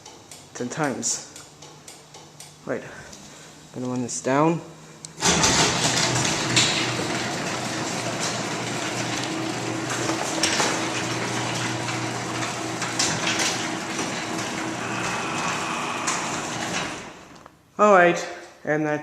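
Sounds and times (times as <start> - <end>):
door clacks: 5.2 - 17.3
door rumbling down track: 5.2 - 17.4
garage door opener motor hum: 5.2 - 17.5.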